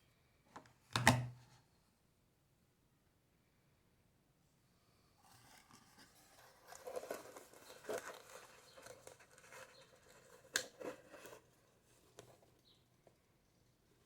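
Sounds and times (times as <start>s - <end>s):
packaging rustling: 6.5s - 12.3s.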